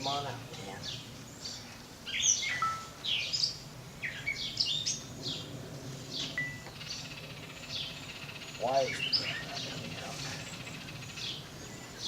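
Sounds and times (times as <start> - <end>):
songbirds chirping: 0.0 - 12.0
whistled bird notes: 1.5 - 5.0.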